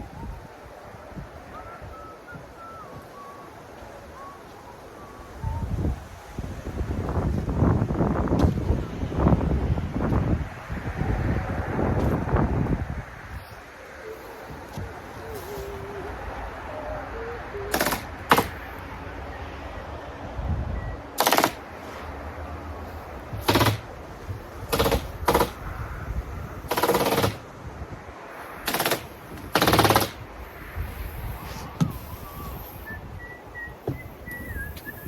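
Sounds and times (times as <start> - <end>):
stapler rapid clicks: 17.7 - 18.6, 21.2 - 21.6, 23.4 - 23.9, 24.7 - 25.6, 26.7 - 27.4, 28.7 - 30.2.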